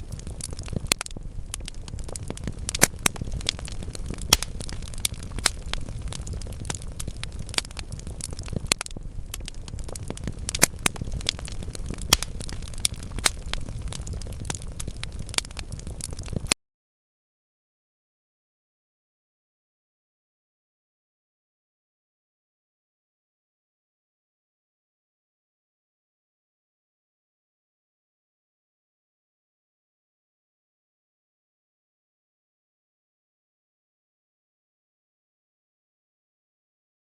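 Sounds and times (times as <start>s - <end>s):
logs crackling in fireplace: 0.0s - 16.6s
low rumble of fire: 0.0s - 16.6s
sharp pops of fire: 0.0s - 16.6s.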